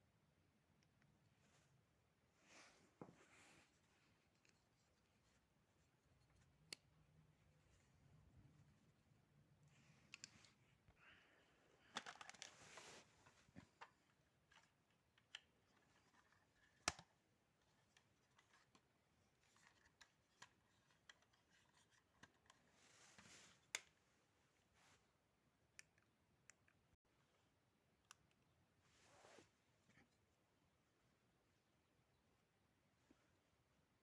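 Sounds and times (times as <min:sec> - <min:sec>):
plastic toy pieces rustling: 0:11.9 - 0:12.8.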